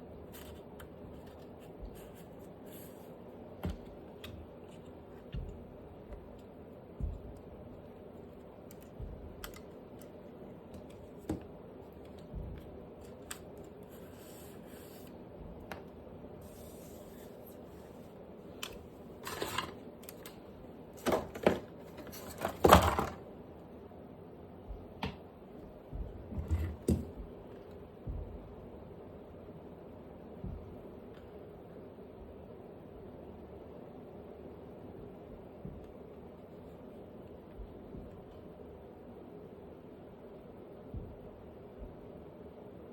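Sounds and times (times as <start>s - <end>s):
clicks and taps of parts: 8.6s - 13.7s.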